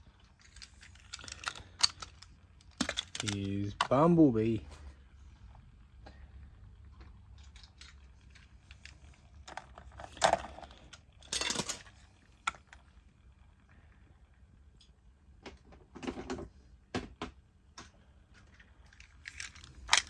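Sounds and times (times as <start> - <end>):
plastic toy parts clicking: 0.2 - 4.0, 7.4 - 12.8, 18.5 - 20.0
plastic toy scraping clatter: 0.4 - 3.4, 7.5 - 12.8, 18.9 - 20.0.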